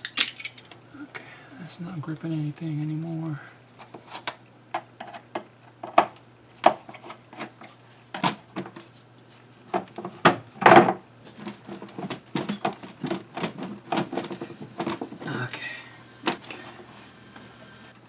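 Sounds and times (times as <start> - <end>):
tools and metal parts clicking: 0.0 - 0.8, 12.5 - 12.8.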